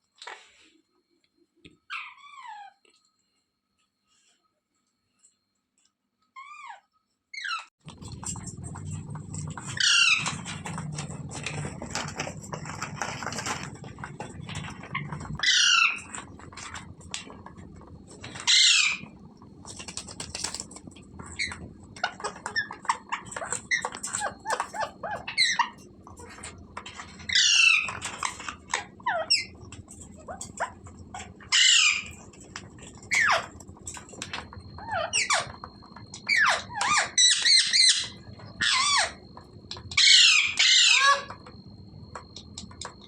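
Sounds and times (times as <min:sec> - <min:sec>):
parrot harsh calls: 0:15.4 - 0:16.2, 0:18.3 - 0:19.1, 0:31.2 - 0:32.2, 0:40.0 - 0:41.3.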